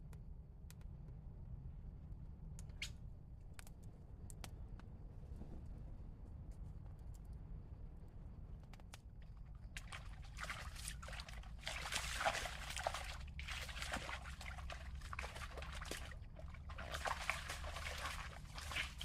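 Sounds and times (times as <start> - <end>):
water trickling and sloshing: 9.2 - 19.0.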